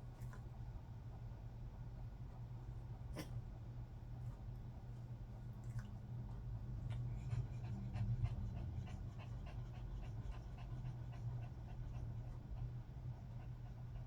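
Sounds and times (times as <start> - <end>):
dog panting: 4.4 - 14.0.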